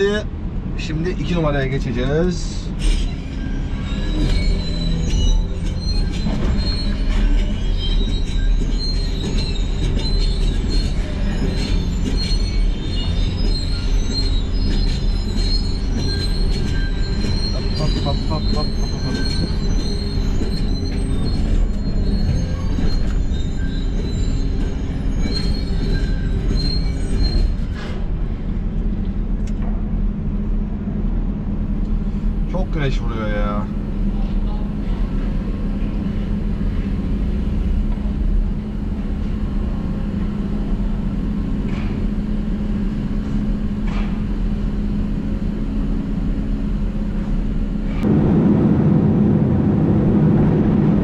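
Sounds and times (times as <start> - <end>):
steel squeaks and clanks: 2.2 - 28.5, 34.2 - 48.0
high-pitched metallic squeal: 2.3 - 28.2
excavator engine drone: 33.7 - 51.0.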